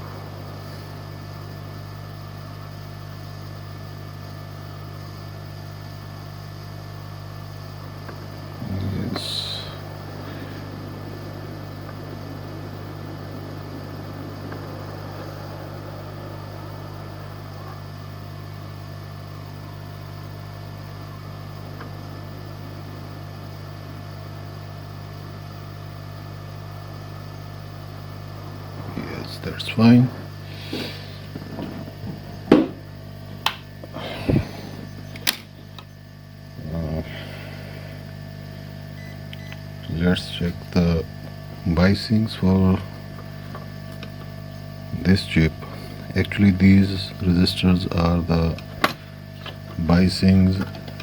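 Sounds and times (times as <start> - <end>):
low steady hum: 0.0 - 51.0.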